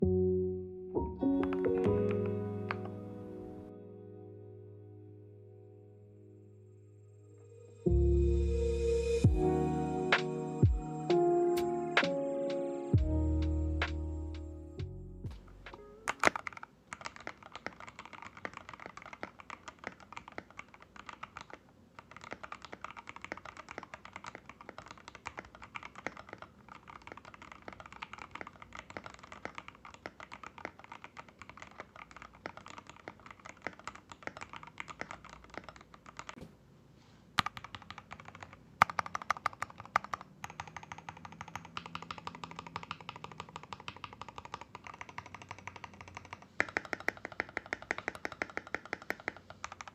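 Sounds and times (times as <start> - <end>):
mechanical keyboard typing: 15.3 - 36.4, 37.4 - 49.9.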